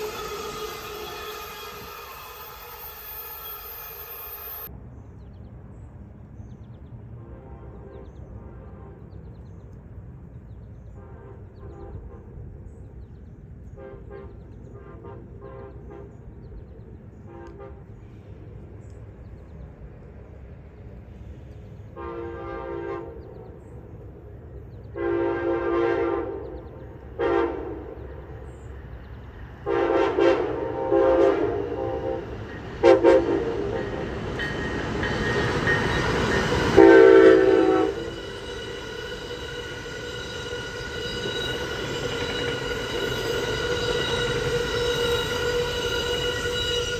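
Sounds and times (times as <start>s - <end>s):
train air horn blasts: 0.0s - 4.7s, 7.2s - 9.1s, 13.7s - 16.3s, 17.2s - 18.2s, 21.9s - 23.6s, 24.9s - 28.1s, 29.6s - 34.2s, 35.4s - 46.9s
train wheels rushing past: 0.0s - 4.7s, 24.8s - 46.9s.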